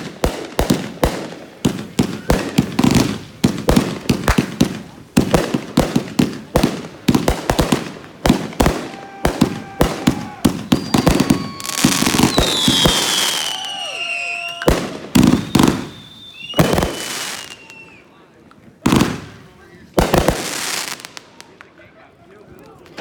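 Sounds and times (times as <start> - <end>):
fireworks bangs: 0.0 - 18.0, 18.8 - 21.6
fireworks hissing: 0.7 - 17.8
falling firework whistles: 8.8 - 18.1.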